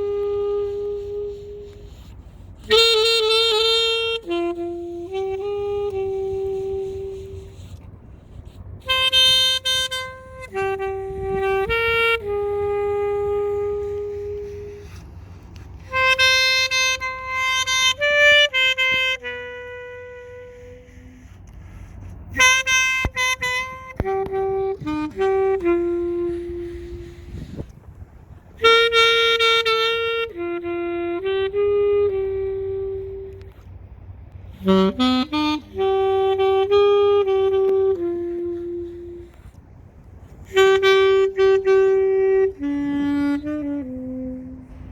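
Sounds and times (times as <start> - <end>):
solo saxophone melody: 0.0 - 44.9.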